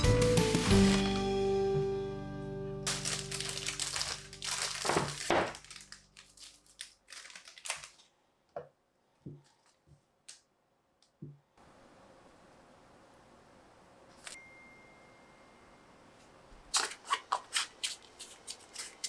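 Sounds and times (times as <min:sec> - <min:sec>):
background music: 0:00.0 - 0:04.8
crunching and crinkling: 0:00.6 - 0:01.2, 0:02.9 - 0:08.2, 0:16.7 - 0:19.0.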